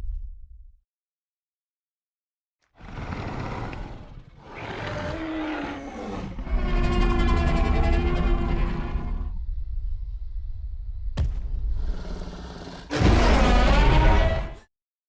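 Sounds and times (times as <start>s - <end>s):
dinosaur growling and roaring: 2.8s - 10.8s, 11.8s - 14.7s.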